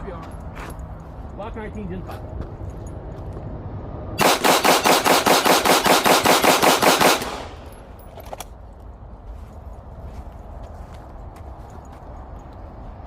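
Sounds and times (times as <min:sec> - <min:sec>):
pistol fired rapidly: 0:04.2 - 0:07.6.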